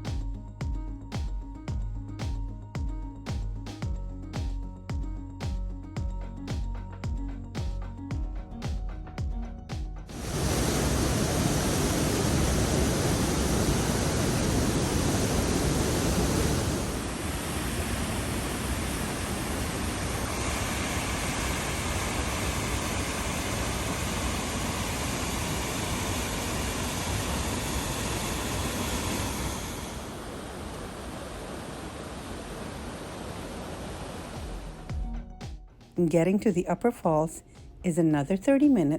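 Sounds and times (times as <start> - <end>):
waterfall and creek rushing: 10.1 - 34.9.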